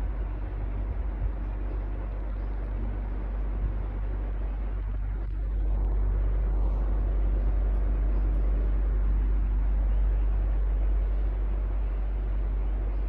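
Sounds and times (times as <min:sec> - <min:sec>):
electric fan running: 0:00.0 - 0:13.0.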